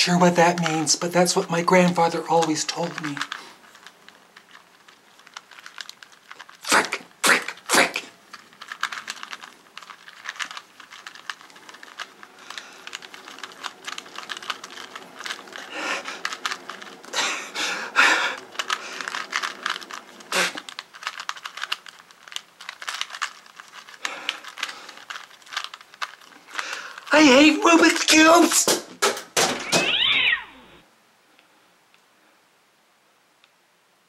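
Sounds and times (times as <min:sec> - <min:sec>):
puzzle cube twisting clicks: 0:00.4 - 0:30.6.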